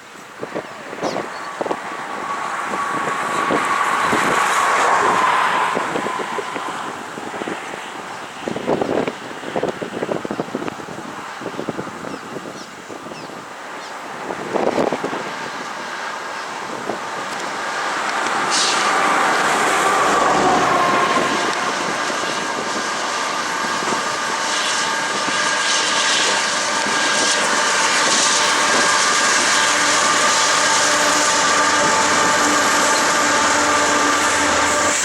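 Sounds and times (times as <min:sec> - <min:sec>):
locomotive engines droning: 0:00.0 - 0:35.0
sustained whine: 0:17.1 - 0:35.0.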